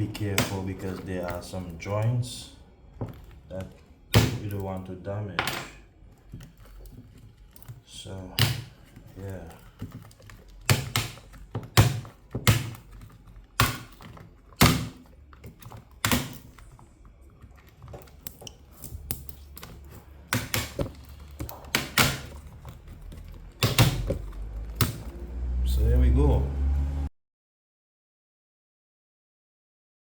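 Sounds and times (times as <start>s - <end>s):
plastic snapping and cracking: 0.0s - 4.9s, 6.0s - 25.2s.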